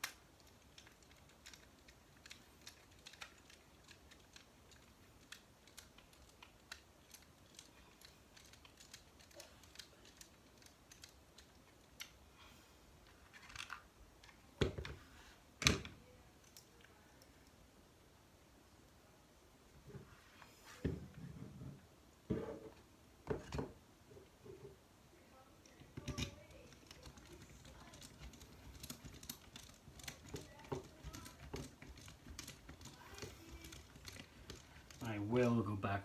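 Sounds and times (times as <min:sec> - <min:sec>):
plastic parts clicking: 0:00.0 - 0:12.2, 0:13.0 - 0:15.0, 0:25.6 - 0:35.1.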